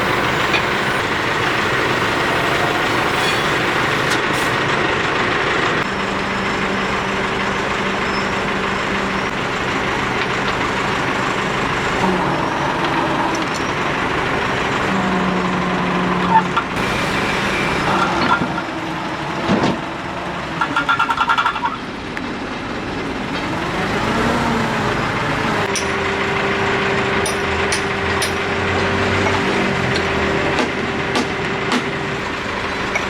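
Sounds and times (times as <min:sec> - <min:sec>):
heavy machine engine running: 0:00.0 - 0:33.0
sharp metallic knocks: 0:25.7 - 0:26.2, 0:27.2 - 0:28.7, 0:30.6 - 0:31.9.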